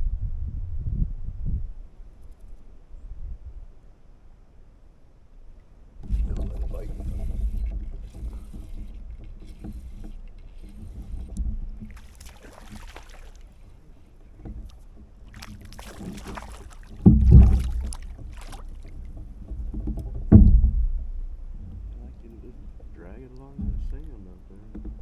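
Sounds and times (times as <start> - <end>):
low rumble: 0.0 - 1.8, 6.0 - 9.9, 17.0 - 25.0
heavy knocks: 6.0 - 25.0.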